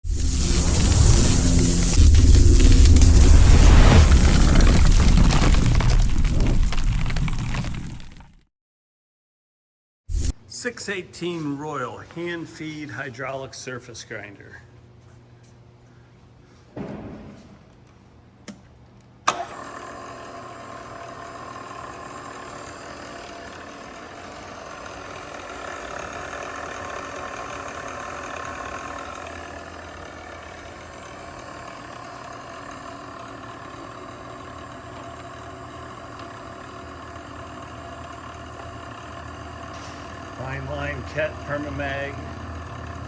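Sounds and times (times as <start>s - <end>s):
grinder motors humming and whining: 19.3s - 43.0s.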